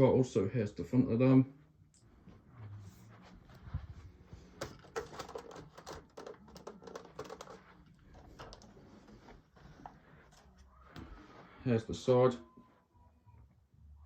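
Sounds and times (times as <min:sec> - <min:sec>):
faint clicks and taps: 0:03.5 - 0:11.2.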